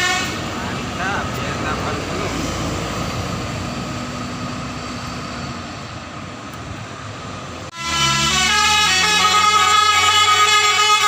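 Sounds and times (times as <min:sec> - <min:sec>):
bus multi-tone horn tune: 0:00.0 - 0:00.9, 0:07.7 - 0:11.0
road traffic: 0:00.0 - 0:11.0.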